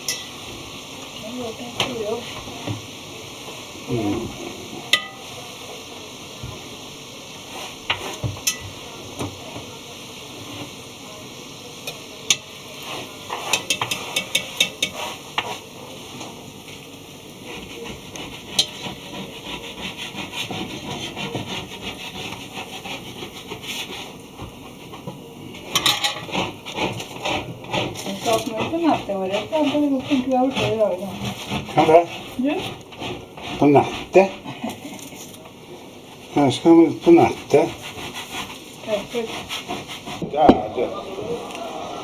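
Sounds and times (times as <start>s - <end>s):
utensils and dishes clattering: 0.0s - 0.5s, 7.9s - 8.9s, 11.8s - 15.6s, 17.7s - 23.7s, 24.4s - 35.4s.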